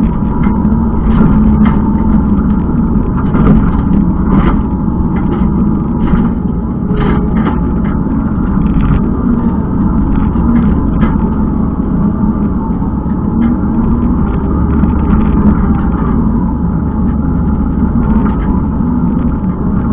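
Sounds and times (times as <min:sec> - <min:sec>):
short clanks and rattles: 0:00.0 - 0:11.4
diesel engine under load: 0:00.0 - 0:19.9.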